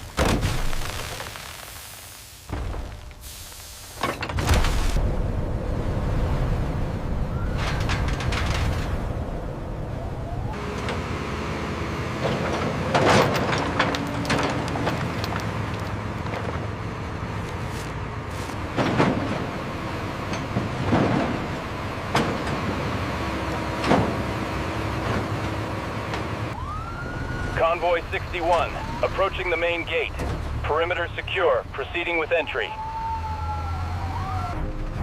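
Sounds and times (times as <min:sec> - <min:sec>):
steady low rumble: 0:04.5 - 0:10.6.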